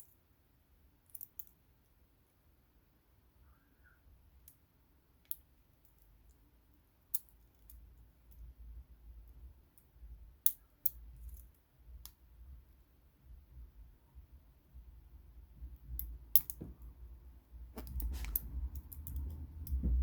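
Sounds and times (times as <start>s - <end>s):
lock pick metallic clicks: 16.0s - 16.6s
faint low handling rumble: 16.6s - 20.0s.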